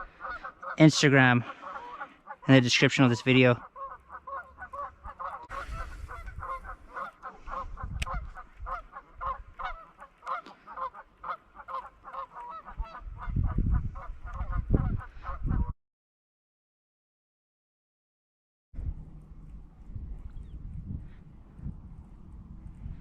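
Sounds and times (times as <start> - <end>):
geese honking: 0.0 - 15.7
low rumbling on microphone: 12.8 - 15.7, 18.8 - 23.0.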